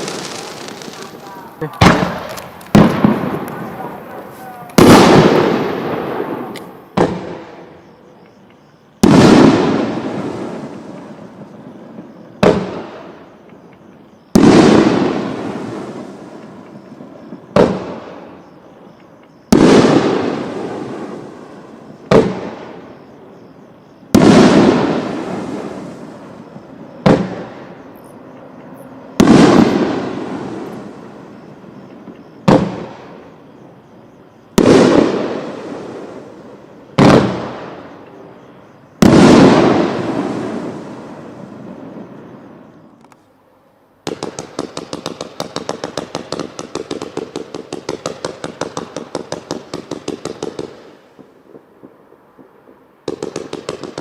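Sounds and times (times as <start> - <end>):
firework bang with crackle: 0.0 - 7.7, 9.0 - 11.2, 12.4 - 13.2, 14.3 - 18.2, 19.5 - 21.4, 22.0 - 22.8, 24.1 - 26.3, 27.0 - 27.8, 29.2 - 31.2, 32.0 - 33.2, 34.6 - 36.3, 37.0 - 37.9, 39.0 - 42.0
firework crack: 0.0 - 23.1, 24.0 - 33.5, 34.5 - 43.2, 44.0 - 54.0.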